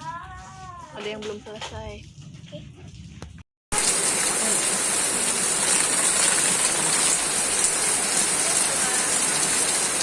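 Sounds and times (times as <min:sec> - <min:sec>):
rain falling steadily: 0:03.7 - 0:10.0.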